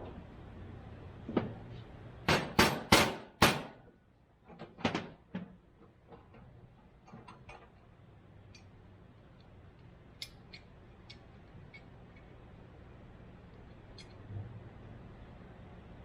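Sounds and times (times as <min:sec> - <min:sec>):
hammer striking metal: 0:02.3 - 0:03.8.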